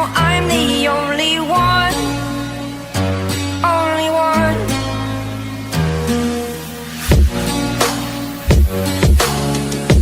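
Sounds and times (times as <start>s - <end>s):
electronic dance music: 3.6s - 10.0s.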